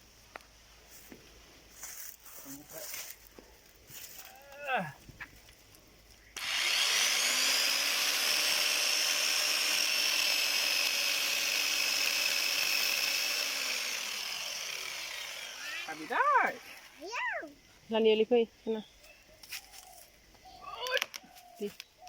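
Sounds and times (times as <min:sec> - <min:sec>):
electric chainsaw whining: 0:06.4 - 0:17.1.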